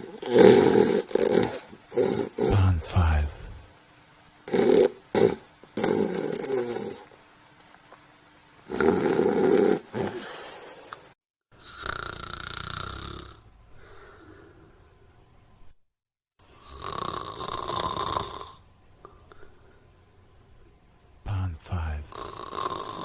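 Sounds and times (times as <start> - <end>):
rasping snores: 0.0 - 2.6, 4.5 - 7.1, 8.7 - 11.0, 11.6 - 13.5, 16.5 - 18.6, 22.1 - 23.0.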